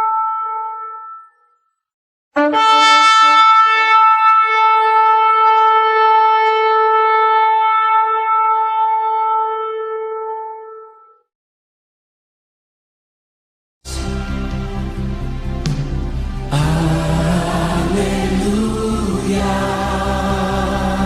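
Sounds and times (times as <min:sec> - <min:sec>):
shofar long blast: 0:02.4 - 0:11.1.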